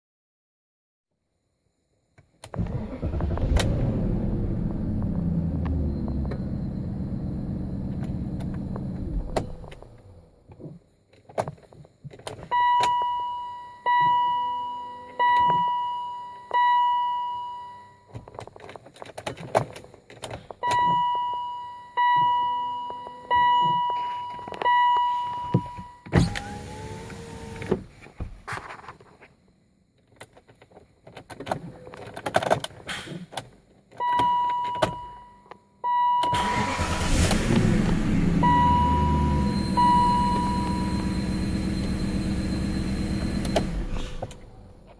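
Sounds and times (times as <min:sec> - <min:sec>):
car engine running: 0:02.6 - 0:10.3, 0:36.4 - 0:44.9
car warning chime: 0:12.5 - 0:18.1, 0:20.6 - 0:26.0, 0:34.0 - 0:43.8.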